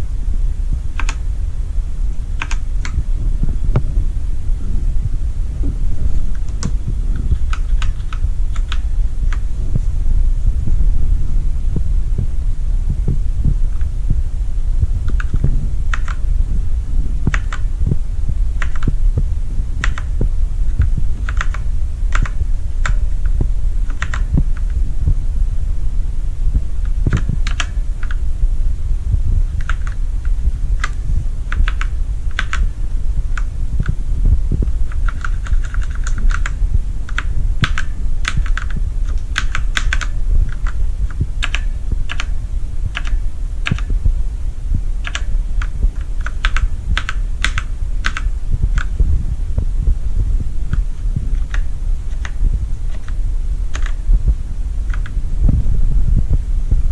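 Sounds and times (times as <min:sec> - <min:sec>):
steady low hum: 0:00.0 - 0:56.9
mechanical keyboard keys pressed: 0:01.0 - 0:01.2, 0:02.4 - 0:03.0, 0:06.3 - 0:09.4, 0:15.1 - 0:16.2, 0:17.3 - 0:17.7, 0:18.6 - 0:19.0, 0:19.8 - 0:23.0, 0:23.8 - 0:24.7, 0:26.8 - 0:28.2, 0:29.6 - 0:30.0, 0:30.8 - 0:32.7, 0:34.9 - 0:40.8, 0:41.4 - 0:42.3, 0:42.9 - 0:43.9, 0:45.0 - 0:48.9, 0:51.4 - 0:54.0.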